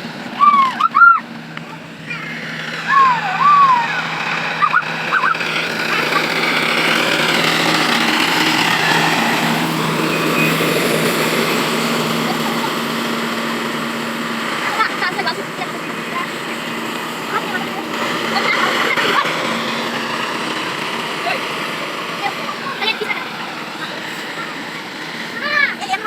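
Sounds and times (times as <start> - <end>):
harvester engine humming: 0.0 - 26.0
high-pitched arching calls: 0.3 - 14.9.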